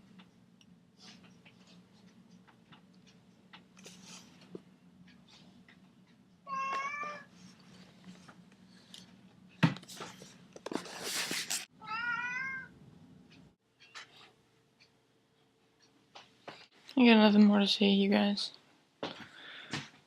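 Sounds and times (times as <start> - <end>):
cat meowing: 6.5 - 7.3, 11.8 - 12.7.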